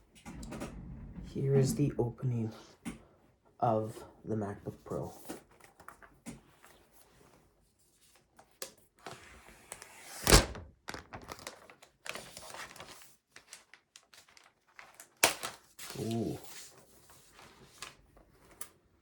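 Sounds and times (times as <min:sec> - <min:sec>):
packaging scraping and rustling: 0:09.1 - 0:18.6.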